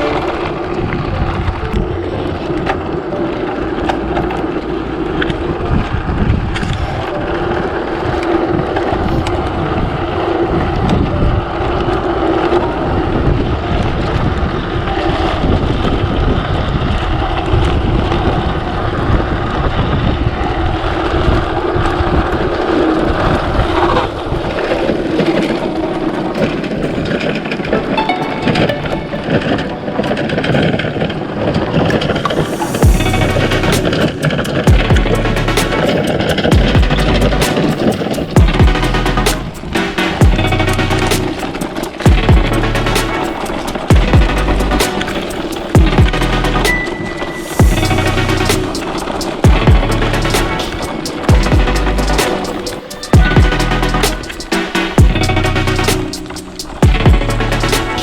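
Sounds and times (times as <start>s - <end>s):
wind buffeting microphone: 0.0s - 27.3s.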